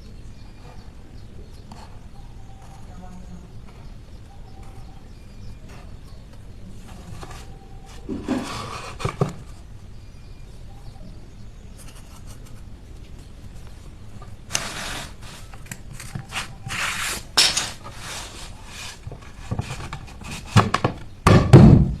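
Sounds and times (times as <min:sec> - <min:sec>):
scraping strokes on wood: 0:06.8 - 0:09.6, 0:14.5 - 0:20.8.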